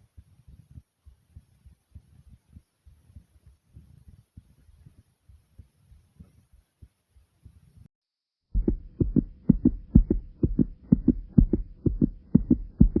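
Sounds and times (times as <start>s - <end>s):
faint steady hum: 8.6s - 13.0s
fast pounding heartbeat: 8.6s - 13.0s.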